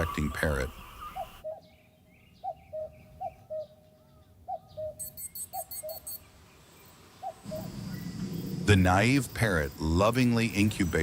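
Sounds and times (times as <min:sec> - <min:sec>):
cuckoo calling: 0:00.0 - 0:06.3
birds chirping: 0:00.0 - 0:11.0.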